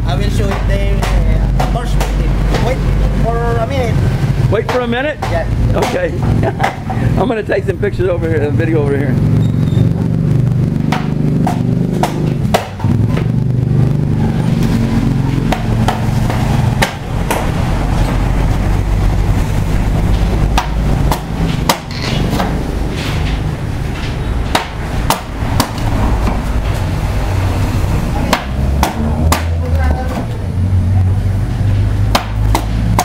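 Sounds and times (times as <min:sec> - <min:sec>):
tools knocking on bamboo: 0:00.4 - 0:02.8, 0:04.6 - 0:07.0, 0:15.4 - 0:17.5, 0:20.1 - 0:22.6, 0:24.5 - 0:26.4
low rumble: 0:12.3 - 0:21.7.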